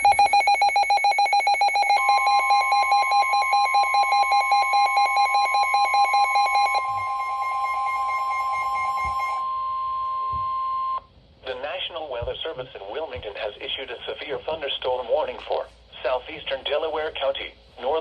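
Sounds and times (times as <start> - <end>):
rapid electronic beeping: 0.0 - 9.4
steady warning alarm tone: 0.0 - 11.0.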